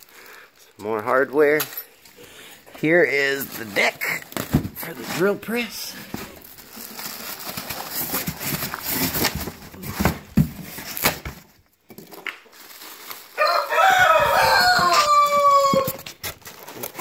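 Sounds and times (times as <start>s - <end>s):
cardboard and packing rustling: 2.1s - 17.0s
rooster crowing: 13.4s - 16.0s.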